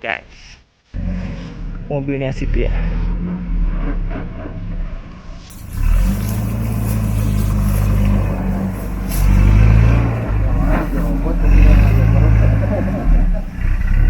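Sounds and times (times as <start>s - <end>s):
engine running under load: 5.5s - 14.0s.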